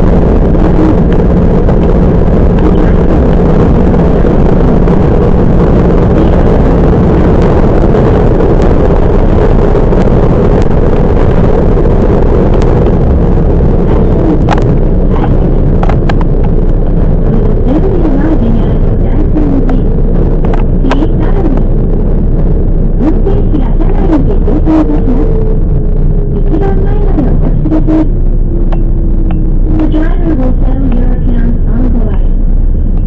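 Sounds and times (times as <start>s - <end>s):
train wheels rumbling on rail: 0.0s - 22.1s
wavering whines: 0.0s - 33.0s.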